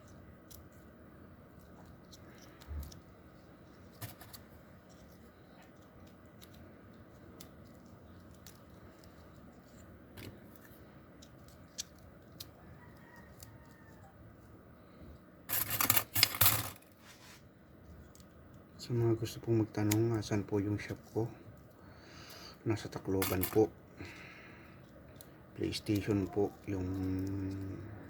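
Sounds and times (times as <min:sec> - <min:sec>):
faint clicks and snips: 0:01.5 - 0:14.5, 0:17.7 - 0:18.7.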